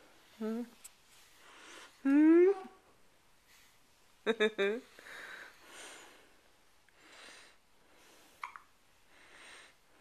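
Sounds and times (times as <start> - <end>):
faint slow breaths: 1.0 - 2.1, 4.9 - 10.0.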